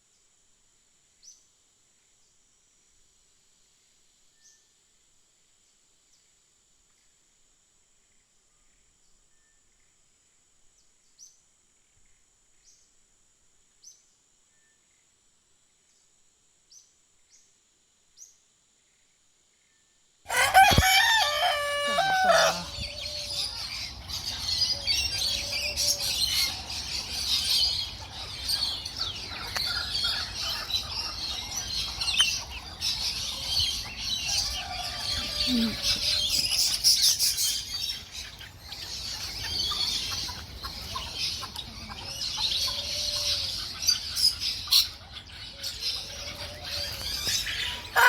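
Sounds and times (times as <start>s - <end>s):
loud call of larger bird: 20.3s - 23.6s, 46.2s - 48.0s
small birds chirping: 20.3s - 48.0s.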